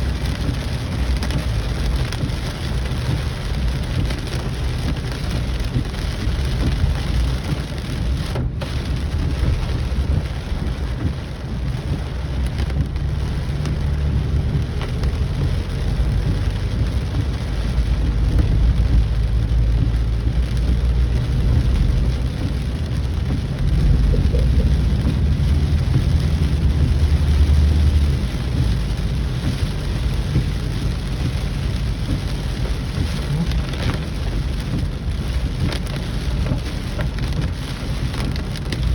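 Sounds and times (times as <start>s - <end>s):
heavy rain falling: 0.0s - 38.9s
low rumble: 0.0s - 38.9s.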